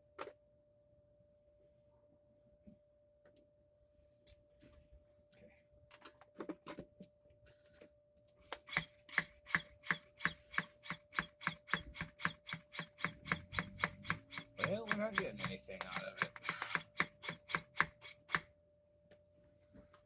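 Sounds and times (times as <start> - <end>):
hand pump plastic clicks: 8.4 - 18.5.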